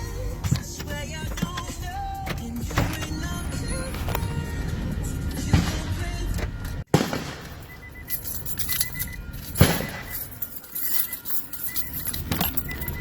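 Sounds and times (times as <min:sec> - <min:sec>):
distant firework bangs: 0:06.9 - 0:07.8.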